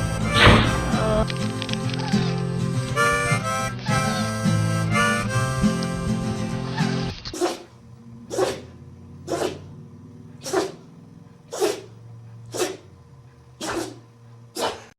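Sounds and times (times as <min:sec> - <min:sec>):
dog sneezing: 0:06.8 - 0:07.7, 0:08.3 - 0:13.0, 0:13.6 - 0:14.9.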